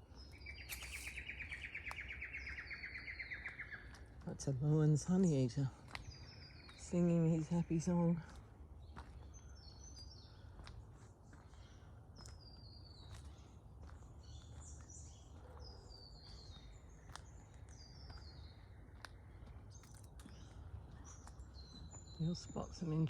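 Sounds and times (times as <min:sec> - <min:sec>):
bird singing faintly: 0:00.0 - 0:23.0
sharp bird chirps: 0:00.2 - 0:04.1.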